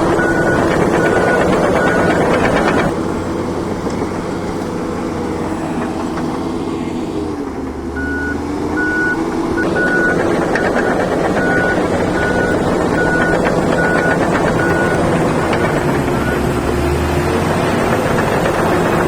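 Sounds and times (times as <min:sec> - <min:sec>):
reversing alarm beeping: 0:00.0 - 0:02.9, 0:08.0 - 0:16.7
diesel machinery engine: 0:00.0 - 0:19.0.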